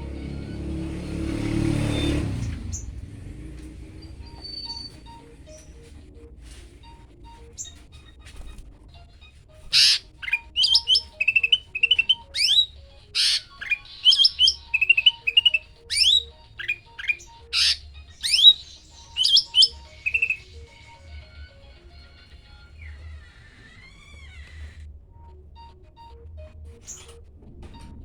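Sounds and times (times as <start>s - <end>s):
songbird singing chirps and trills: 0.0s - 27.2s
harsh rasping bird note: 9.8s - 12.6s, 13.2s - 18.6s.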